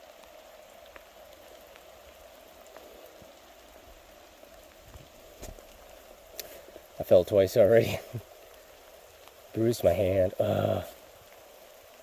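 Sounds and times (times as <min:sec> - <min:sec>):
light rain falling: 0:00.0 - 0:12.0
faint ticks of single drops: 0:06.3 - 0:06.6.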